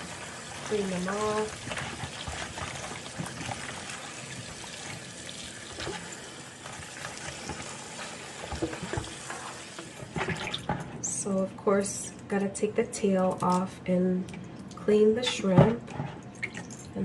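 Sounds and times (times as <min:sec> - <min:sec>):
kitchen tap water trickling: 0:00.0 - 0:10.8.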